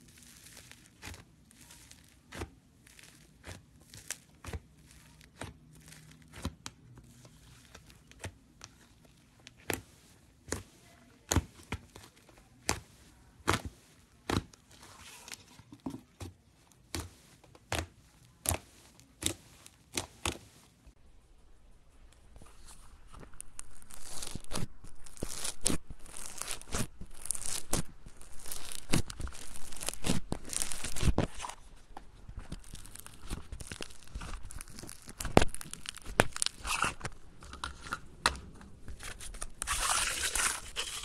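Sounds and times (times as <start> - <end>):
foam slime crackling pops: 23.4 - 31.4, 32.3 - 37.1.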